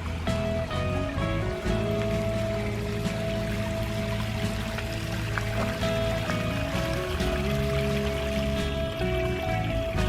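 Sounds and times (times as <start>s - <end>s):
background music sustained notes: 0.0s - 10.0s.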